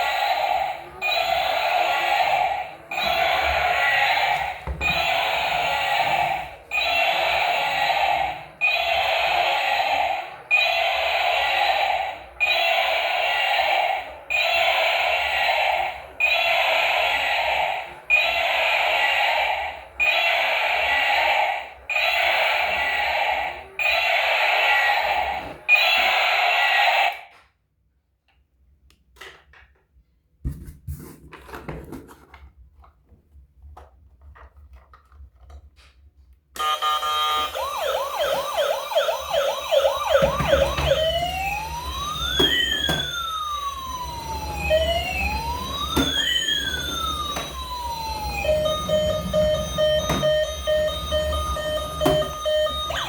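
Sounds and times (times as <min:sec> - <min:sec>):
toy electronic siren: 0:00.0 - 0:27.4, 0:36.6 - 0:53.0
repeated electronic tones: 0:36.6 - 0:53.0.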